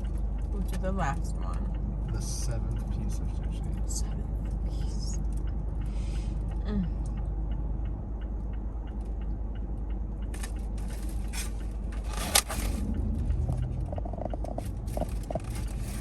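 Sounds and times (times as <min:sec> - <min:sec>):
car cabin hum: 0:00.0 - 0:16.0
rustling handling sounds: 0:10.4 - 0:12.9.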